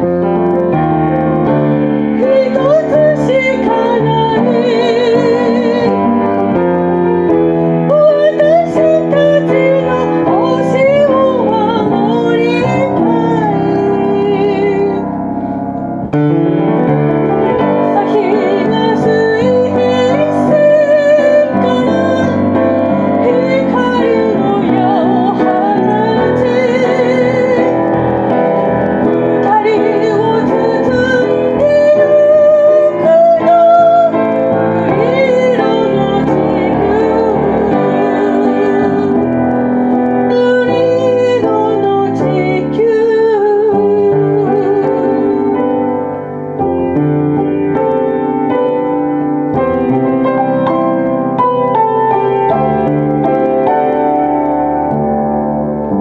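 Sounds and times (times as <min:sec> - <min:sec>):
piano accompaniment: 0:00.0 - 0:56.0
person singing with vibrato: 0:02.0 - 0:15.6, 0:17.3 - 0:46.8.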